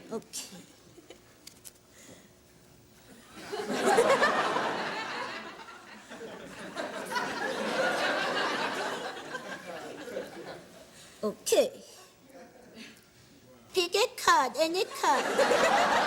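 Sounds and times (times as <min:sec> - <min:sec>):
studio audience laughing: 0:03.4 - 0:10.8, 0:15.0 - 0:16.0.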